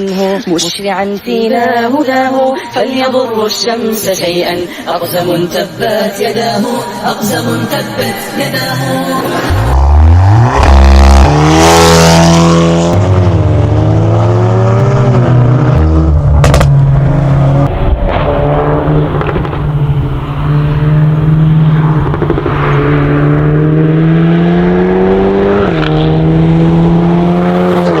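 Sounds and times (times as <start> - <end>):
car engine revving: 8.6 - 28.0
exhaust cracks: 14.8 - 23.6.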